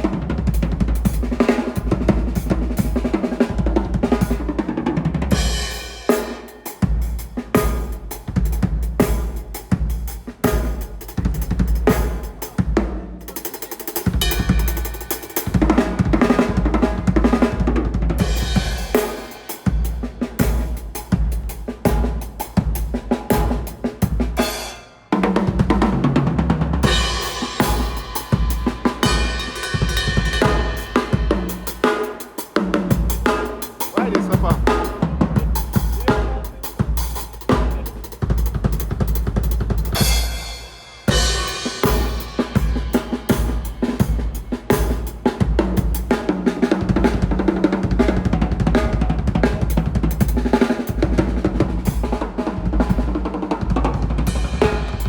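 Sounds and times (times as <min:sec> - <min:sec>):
drum kit played hard: 0:00.0 - 0:55.0.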